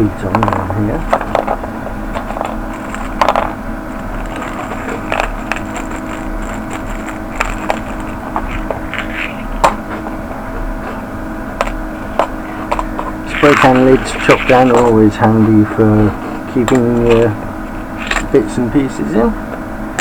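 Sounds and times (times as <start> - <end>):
steady electrical hum: 0.0 - 20.0.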